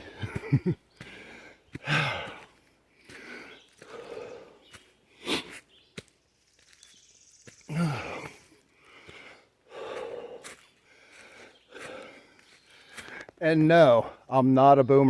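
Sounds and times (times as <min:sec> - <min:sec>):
person breathing hard: 0:00.0 - 0:05.7, 0:07.7 - 0:13.4
voiced huff: 0:01.0 - 0:05.7
sniffing: 0:03.2 - 0:05.7.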